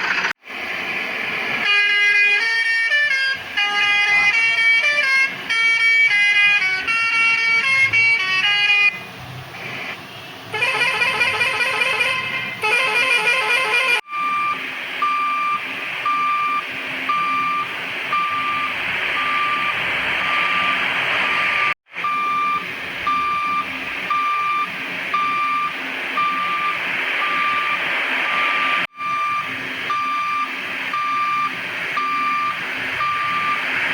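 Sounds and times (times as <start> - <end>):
engine-like hiss: 0.0 - 1.7, 9.1 - 11.3, 31.6 - 33.9
horn-like tone: 1.6 - 9.1, 10.5 - 14.5
reversing alarm beeping: 12.8 - 33.9.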